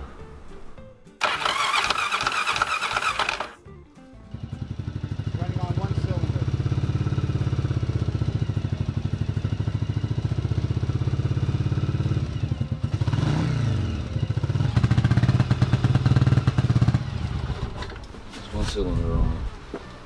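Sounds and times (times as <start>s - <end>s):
motorcycle engine pulsing: 1.2s - 3.6s.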